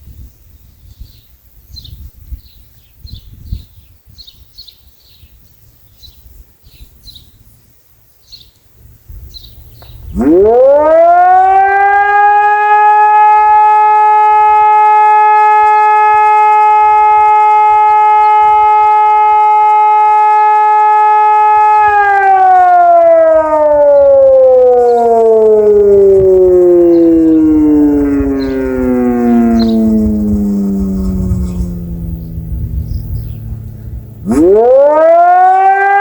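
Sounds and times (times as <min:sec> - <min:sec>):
civil defence siren: 0:09.6 - 0:36.0.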